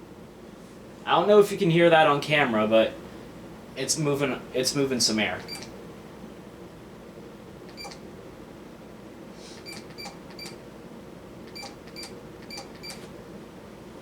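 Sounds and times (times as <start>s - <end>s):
ceiling fan humming: 0.0s - 14.0s.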